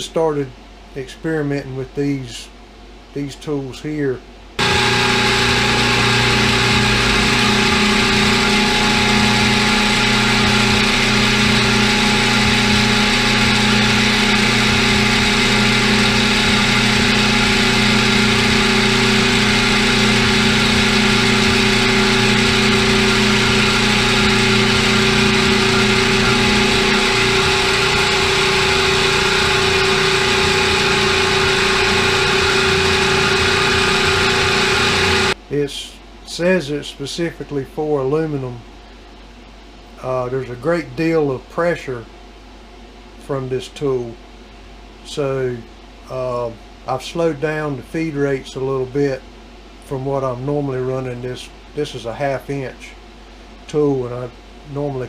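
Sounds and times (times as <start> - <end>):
milling machine hum and whine: 4.6 - 35.4.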